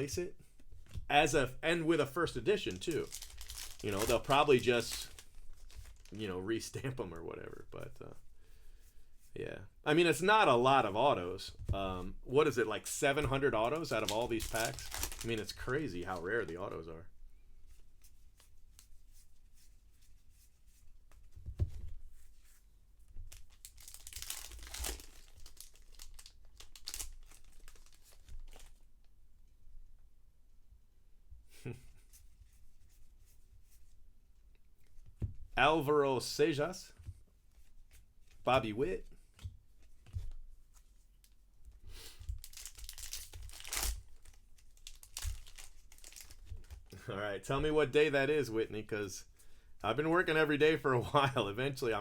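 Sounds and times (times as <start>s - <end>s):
foil wrappers tearing and crinkling: 2.6s - 6.2s, 13.6s - 16.4s, 23.3s - 28.8s, 42.3s - 46.9s.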